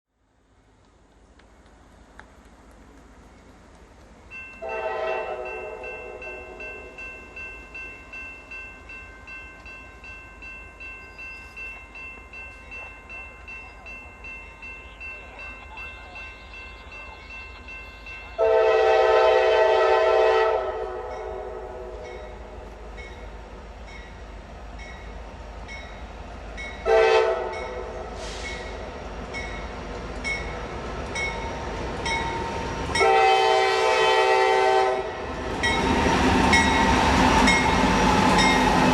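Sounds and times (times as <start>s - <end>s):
freight train rumble: 0.3s - 38.9s
locomotive air horn: 4.6s - 6.6s, 18.4s - 22.1s, 26.8s - 28.6s, 33.0s - 35.3s
bell ringing: 5.4s - 18.4s.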